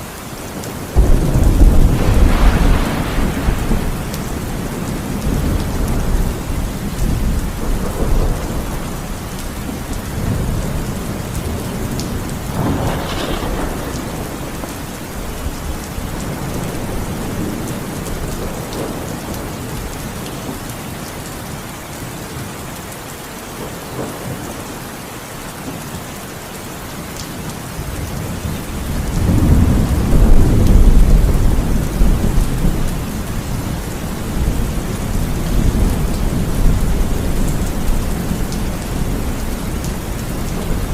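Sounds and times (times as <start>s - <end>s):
heavy rain: 0.0s - 40.9s
rolling thunder: 0.9s - 20.0s, 28.0s - 40.9s.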